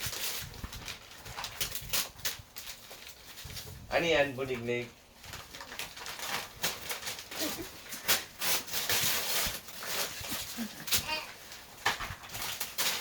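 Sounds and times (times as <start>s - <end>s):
packaging crackling and rustling: 0.0s - 13.0s
young child vocal sounds: 10.7s - 11.4s.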